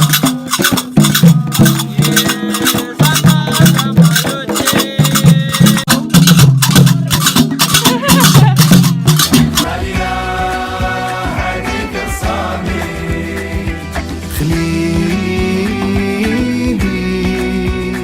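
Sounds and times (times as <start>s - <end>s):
hand drums and rattles: 0.0s - 11.9s
repeating bass line: 0.0s - 17.9s.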